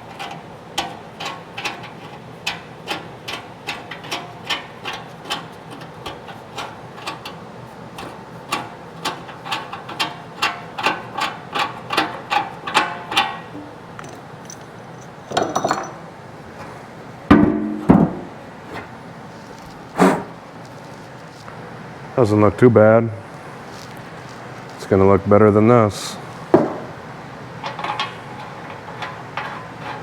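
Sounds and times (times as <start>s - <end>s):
heavier knocks and clatters: 17.3s - 18.4s, 26.5s - 27.0s.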